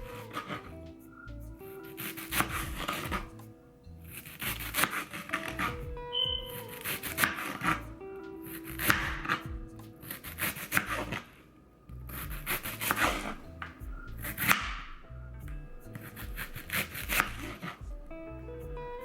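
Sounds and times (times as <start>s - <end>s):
soft background music: 0.0s - 19.0s
knife slicing onion on board: 4.7s - 5.7s, 6.8s - 7.8s, 10.1s - 11.2s, 12.2s - 13.4s.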